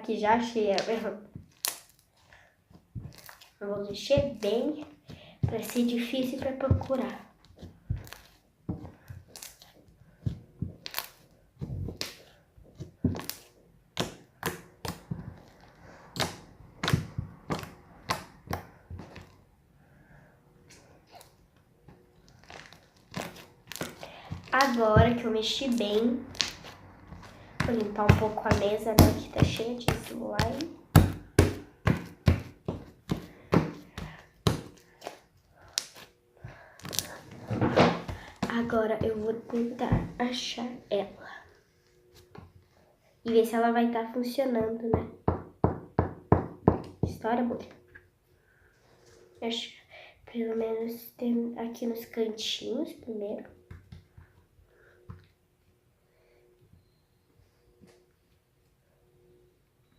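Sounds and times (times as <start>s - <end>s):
slime clicking and popping: 0.7s - 2.0s.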